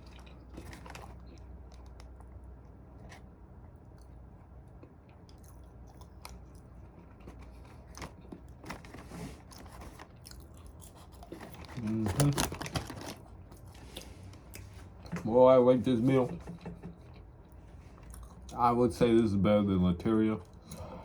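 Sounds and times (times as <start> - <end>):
person chewing: 0.0 - 8.6, 9.5 - 11.8, 13.2 - 15.1, 17.0 - 18.6
low room hum: 0.0 - 21.0.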